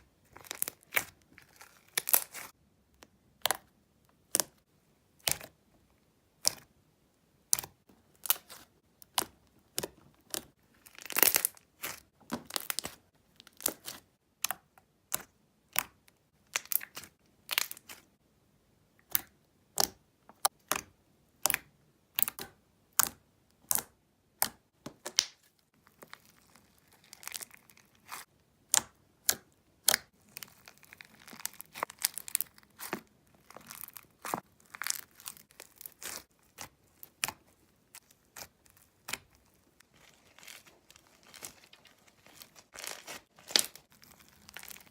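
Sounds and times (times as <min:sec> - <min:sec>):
crunchy slime crackling: 0:00.2 - 0:02.6, 0:07.5 - 0:14.6, 0:15.8 - 0:18.0, 0:25.1 - 0:44.9.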